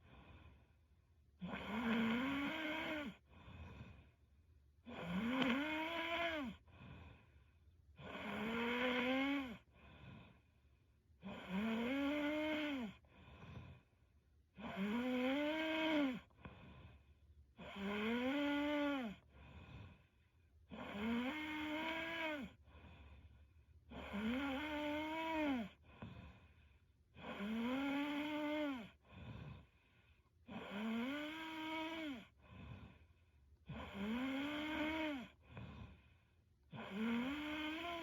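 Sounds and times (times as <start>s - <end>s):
faint breathing: 0.0s - 1.1s, 3.0s - 4.5s, 6.6s - 7.8s, 9.1s - 10.9s, 13.0s - 14.2s, 16.2s - 17.4s, 19.1s - 20.5s, 22.5s - 23.9s, 25.7s - 27.0s, 28.9s - 30.5s, 32.2s - 33.8s, 34.7s - 36.5s
woman snoring: 1.4s - 4.0s, 4.8s - 7.2s, 8.0s - 10.4s, 11.2s - 13.8s, 14.6s - 16.9s, 17.6s - 20.0s, 20.7s - 22.6s, 23.9s - 26.4s, 27.2s - 29.8s, 30.5s - 33.0s, 33.6s - 36.1s, 36.7s - 38.0s.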